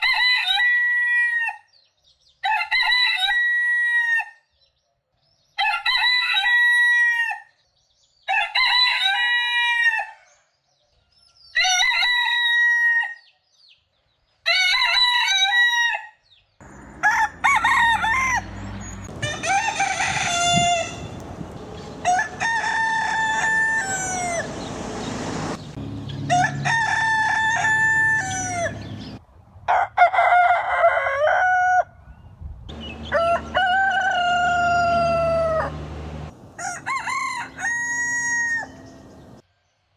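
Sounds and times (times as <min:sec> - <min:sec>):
roosters crowing: 0:16.6 - 0:31.9, 0:32.7 - 0:39.4.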